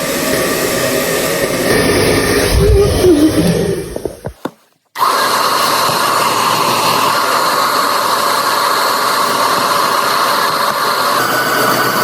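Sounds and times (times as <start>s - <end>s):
hair dryer running: 5.0s - 12.0s.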